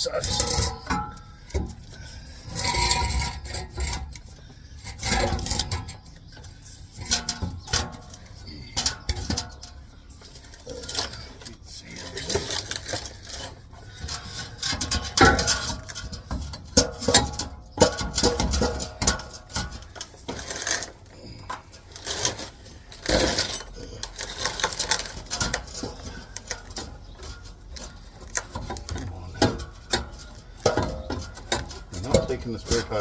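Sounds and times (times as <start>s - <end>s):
exhaust pipe clanking against chassis: 0.0s - 33.0s.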